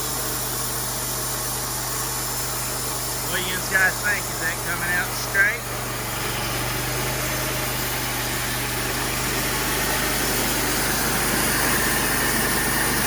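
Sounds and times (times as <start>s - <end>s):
saw blade whine: 0.0s - 13.0s
sawmill engine drone: 0.0s - 13.0s.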